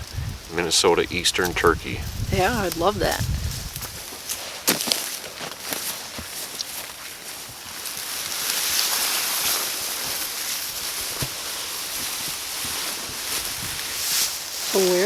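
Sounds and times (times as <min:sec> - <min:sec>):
rustling through dry vegetation: 0:00.0 - 0:15.0
soft footfalls: 0:02.6 - 0:08.0, 0:09.0 - 0:14.1.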